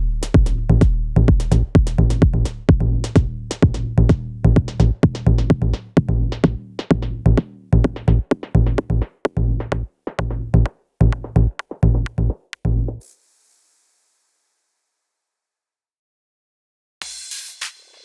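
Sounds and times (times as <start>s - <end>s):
electronic music with drum beat: 0.0s - 13.0s.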